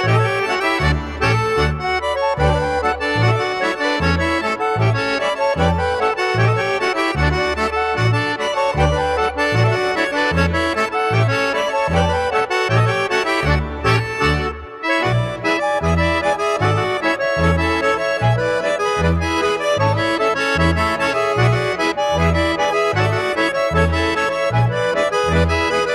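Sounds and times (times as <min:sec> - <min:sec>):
accordion folk tune: 0:00.0 - 0:25.9.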